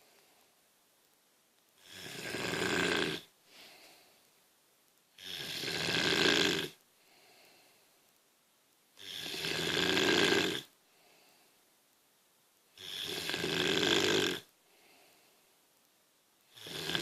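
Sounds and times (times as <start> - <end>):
woman snoring: 1.8 - 3.3, 5.2 - 6.8, 9.0 - 10.7, 12.8 - 14.5, 16.5 - 17.0
faint breath: 3.4 - 4.4, 6.9 - 8.1, 10.8 - 11.8, 14.6 - 15.7.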